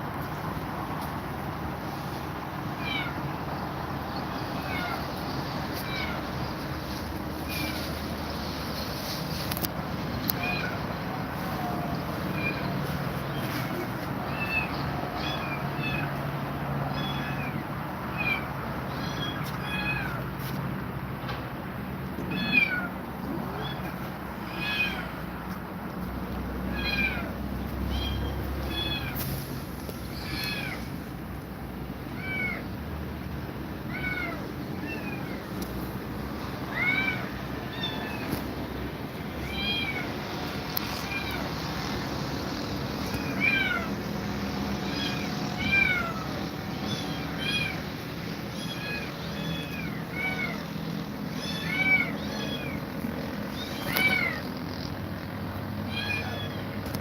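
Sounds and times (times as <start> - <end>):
kittens mewing: 22.2 - 25.3, 26.6 - 29.3, 30.1 - 31.0, 36.4 - 57.0.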